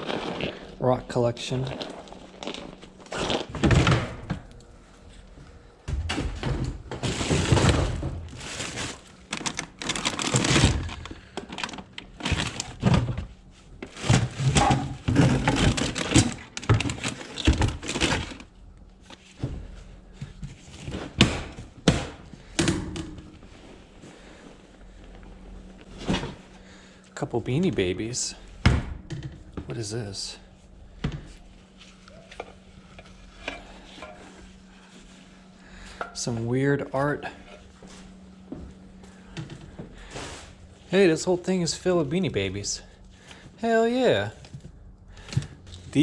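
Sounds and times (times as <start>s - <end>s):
objects knocking and thudding: 5.8s - 18.4s
scraping and rustling: 6.9s - 18.5s.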